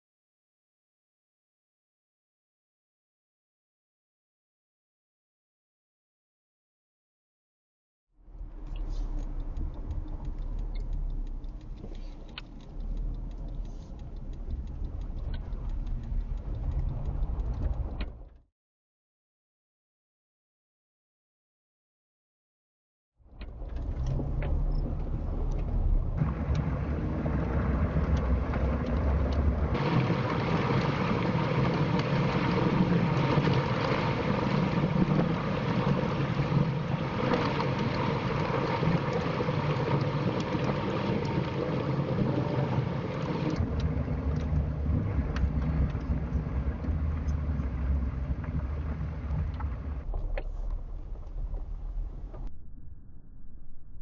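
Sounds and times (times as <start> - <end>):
engine and tyre rumble: 8.2 - 18.4, 23.2 - 52.5
road or wind noise hiss: 26.1 - 50.0.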